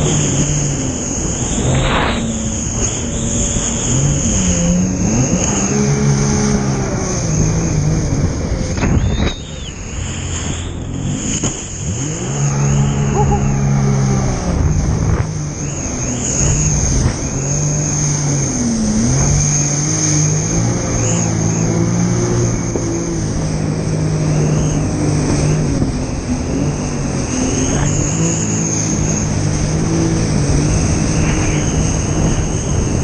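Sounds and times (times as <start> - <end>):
rushing noise: 0.0 - 24.9
jet ski engine: 0.0 - 33.0.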